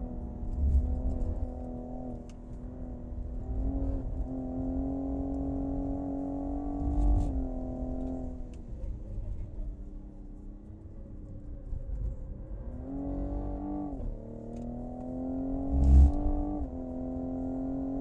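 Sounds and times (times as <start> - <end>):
car engine revving hard: 15.1 - 18.0.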